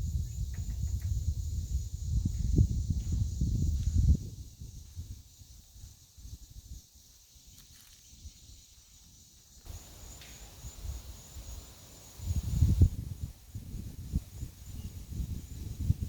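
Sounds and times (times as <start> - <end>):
wind rumble: 0.0 - 6.8, 9.7 - 16.0
high-pitched insect trill: 0.0 - 16.0.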